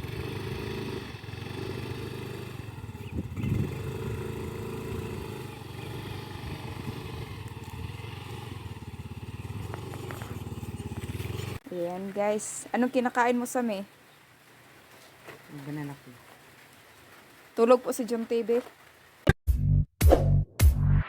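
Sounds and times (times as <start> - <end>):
small motorcycle engine running: 0.0 - 11.6.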